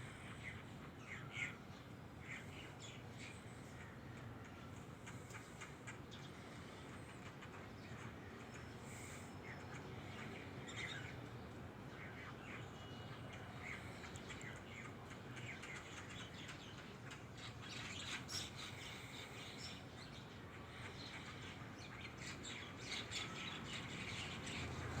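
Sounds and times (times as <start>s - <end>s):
faint background hum: 0.0s - 25.0s
small birds chirping: 0.0s - 25.0s.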